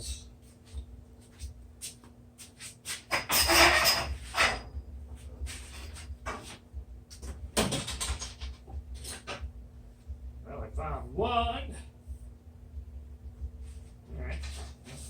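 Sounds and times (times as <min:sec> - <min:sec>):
tools clattering and knocking: 0:03.0 - 0:04.8, 0:05.4 - 0:09.5.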